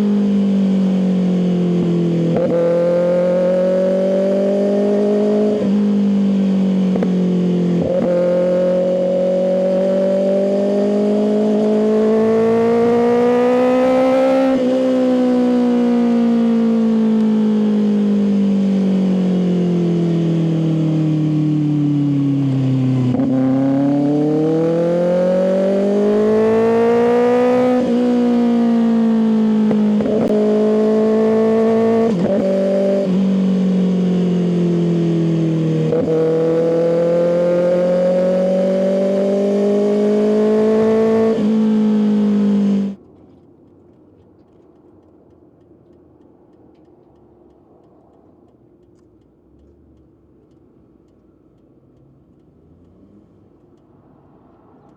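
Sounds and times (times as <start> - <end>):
motorcycle engine revving: 0.0 - 43.1
quick gear changes: 39.3 - 54.9.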